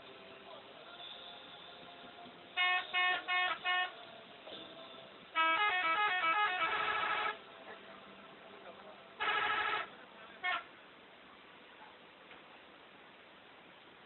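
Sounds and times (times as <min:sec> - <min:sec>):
musical bus air horn: 0:02.5 - 0:07.5, 0:09.2 - 0:10.7.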